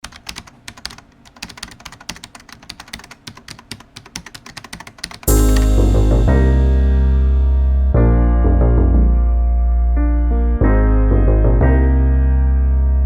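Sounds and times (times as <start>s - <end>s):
keyboard typing clicks: 0.0s - 5.7s
keyboard music: 5.3s - 13.0s.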